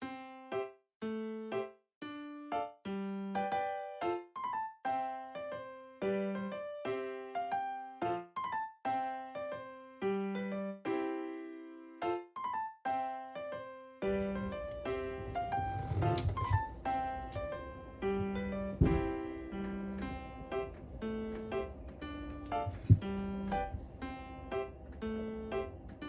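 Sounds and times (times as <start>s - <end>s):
electric piano melody: 0.0s - 26.0s
faint room noise: 14.0s - 26.0s.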